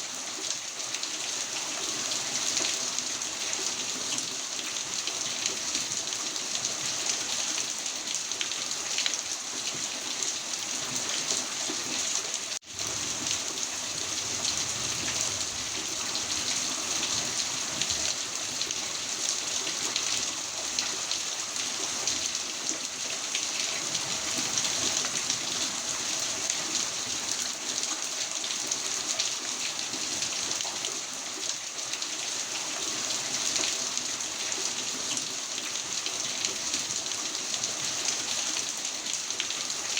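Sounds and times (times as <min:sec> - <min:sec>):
heavy rain falling: 0:10.5 - 0:30.7.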